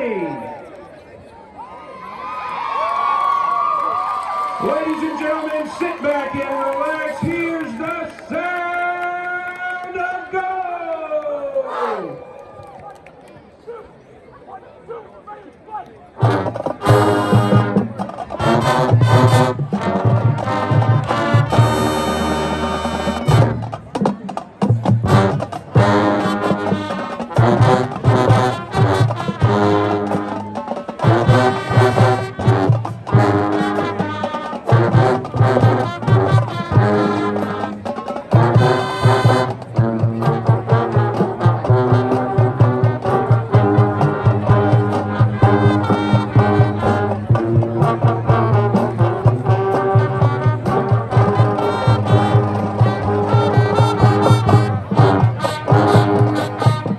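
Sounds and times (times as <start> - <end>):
marching band playing: 16.2 - 56.9
steady drum beat: 16.2 - 56.9
trombones and trumpets: 16.2 - 56.9.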